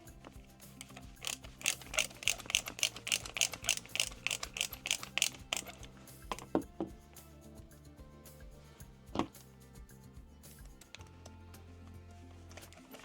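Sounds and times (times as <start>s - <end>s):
background music: 0.0s - 13.0s
ratcheting hand tool clicking: 0.2s - 6.7s.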